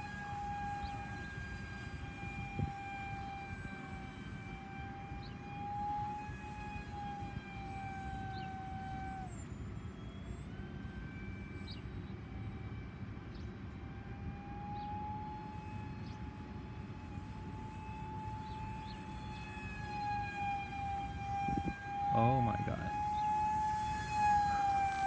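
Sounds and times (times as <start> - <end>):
rc plane electric motor whining: 0.0 - 25.0
wind rumble on microphone: 2.2 - 2.8, 21.2 - 23.1.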